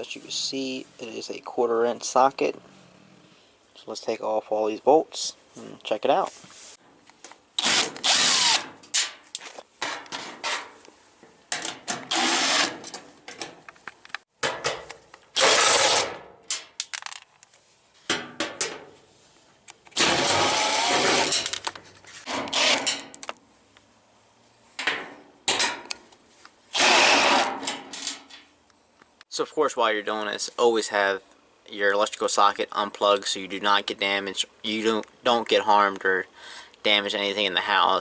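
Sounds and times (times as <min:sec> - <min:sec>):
power drill spinning: 0:07.6 - 0:08.6, 0:12.1 - 0:12.7, 0:15.2 - 0:16.1, 0:20.0 - 0:21.5, 0:22.5 - 0:22.8, 0:26.7 - 0:27.5.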